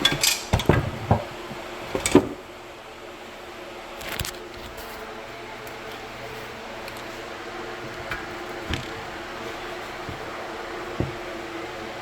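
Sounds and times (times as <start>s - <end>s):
metal clank: 0.0s - 1.0s
electric fan humming: 0.0s - 12.0s.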